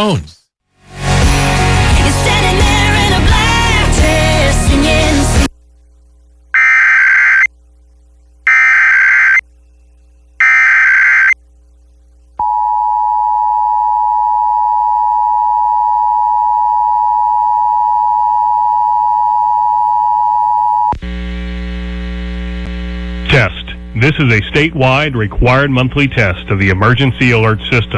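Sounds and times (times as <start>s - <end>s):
two-tone attention signal: 6.6s - 7.5s, 8.5s - 9.4s, 10.4s - 11.4s
warbling digital data tones: 6.6s - 7.5s, 8.5s - 9.4s, 10.4s - 11.4s.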